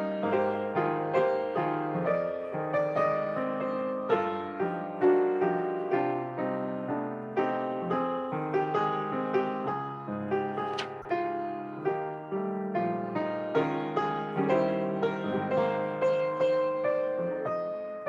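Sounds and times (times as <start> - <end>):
solo piano music: 0.0 - 18.0.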